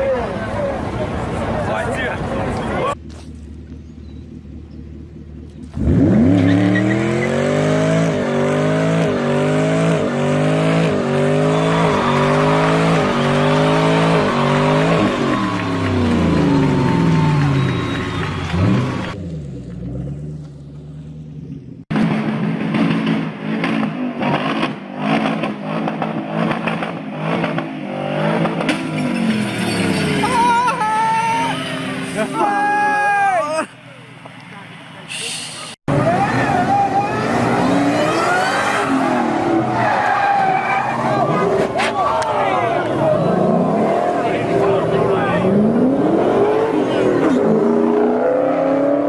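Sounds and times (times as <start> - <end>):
car engine at high revs: 2.9 - 30.4, 35.8 - 49.0
exhaust crackling: 10.9 - 21.8
tyres squealing: 28.8 - 33.7.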